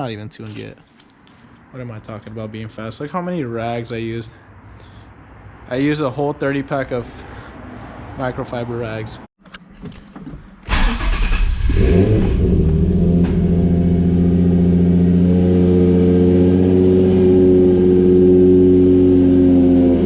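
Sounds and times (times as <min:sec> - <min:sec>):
car engine accelerating: 0:10.7 - 0:20.0.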